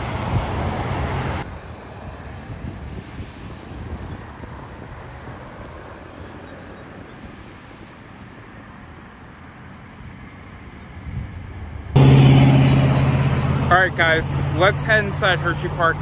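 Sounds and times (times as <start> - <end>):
wind rumble on microphone: 0.0 - 12.1
distant traffic: 0.0 - 16.0.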